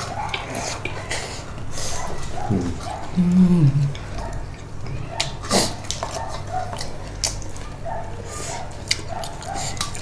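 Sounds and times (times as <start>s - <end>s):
person chewing: 8.4s - 10.0s.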